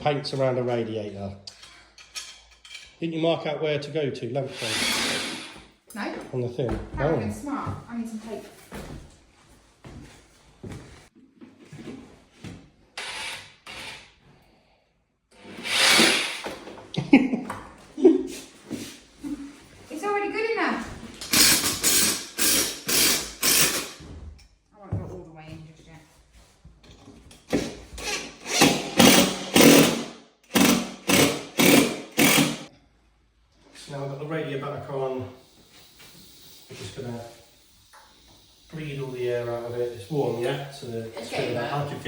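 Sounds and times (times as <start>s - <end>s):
hand tool rasping strokes: 21.3s - 24.0s, 28.0s - 32.7s.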